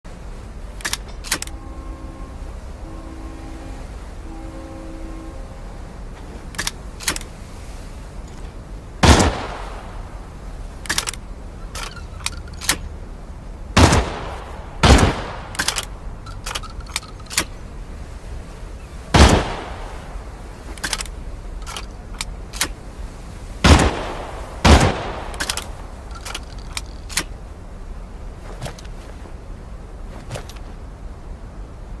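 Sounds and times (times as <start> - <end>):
shotgun blasts: 9.0 - 10.0, 13.8 - 15.8, 19.1 - 19.9, 23.6 - 25.6
sharp clicks: 10.8 - 12.9, 15.4 - 17.6, 25.2 - 27.4.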